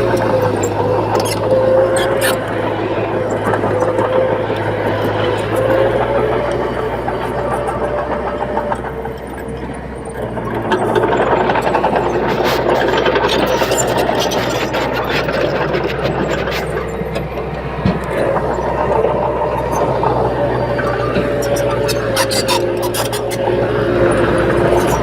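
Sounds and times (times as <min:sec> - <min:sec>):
bulldozer diesel engine running: 0:00.0 - 0:25.0
rattles and clanks: 0:00.0 - 0:25.0.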